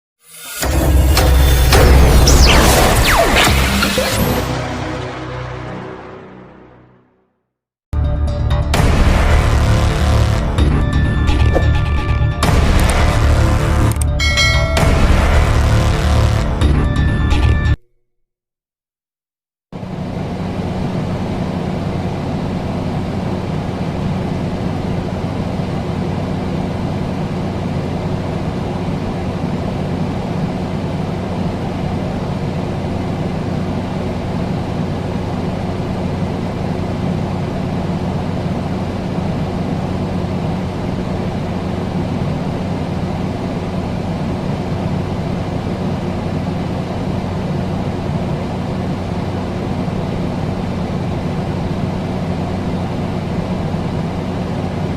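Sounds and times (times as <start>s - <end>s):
air conditioner humming: 19.8s - 54.9s.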